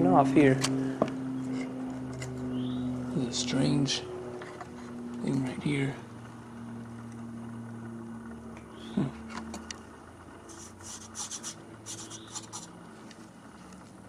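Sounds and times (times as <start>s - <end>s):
low steady hum: 0.0s - 14.0s
scratching and rubbing: 10.5s - 12.8s.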